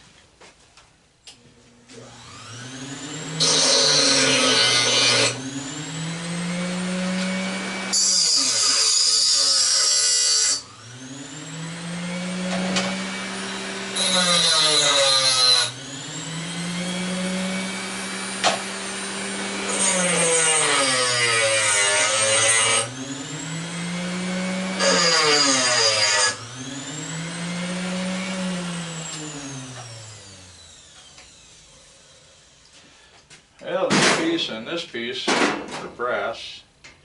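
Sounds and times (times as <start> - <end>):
angle grinder grinding metal: 1.9 - 32.8.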